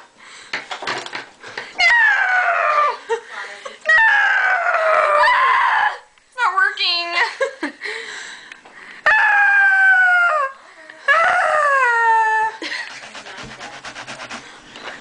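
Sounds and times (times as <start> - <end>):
girl wailing: 3.9 - 6.1, 9.1 - 12.6.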